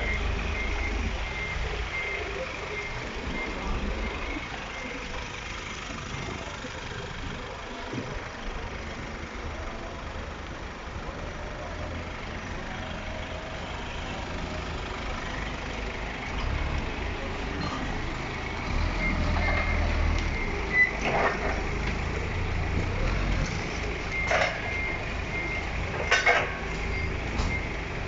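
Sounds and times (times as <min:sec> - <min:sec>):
reversing alarm beeps: 0:00.0 - 0:05.3, 0:18.7 - 0:22.2, 0:24.0 - 0:27.8
truck engine running: 0:00.0 - 0:28.0.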